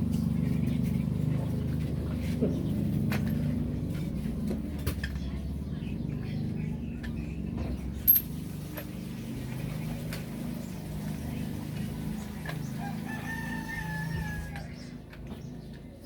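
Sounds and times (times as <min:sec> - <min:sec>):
rooster crowing: 0:12.8 - 0:14.9.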